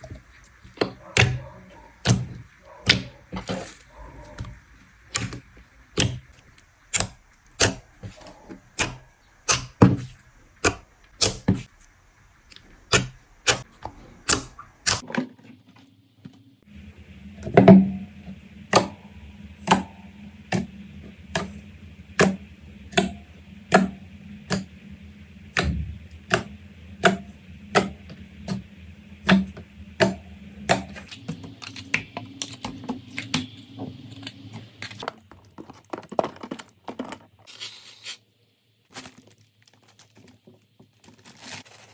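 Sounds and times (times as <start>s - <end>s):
faint steady hum: 0.0s - 41.9s.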